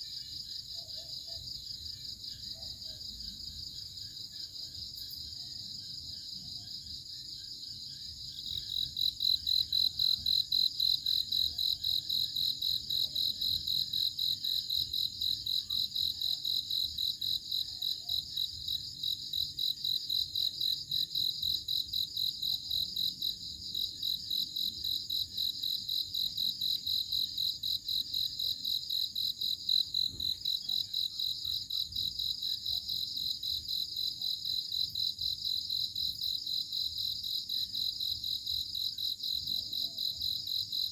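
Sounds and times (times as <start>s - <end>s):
crickets chirping: 0.0s - 40.9s
loud cricket chirping: 0.0s - 40.9s.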